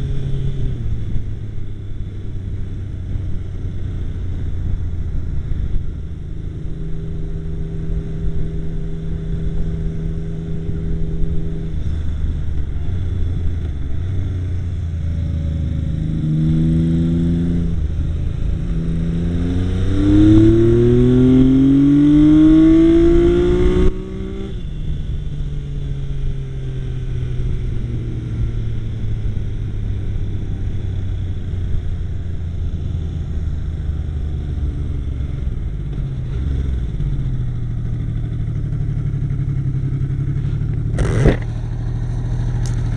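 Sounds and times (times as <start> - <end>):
motorcycle engine accelerating: 0.0 - 42.9.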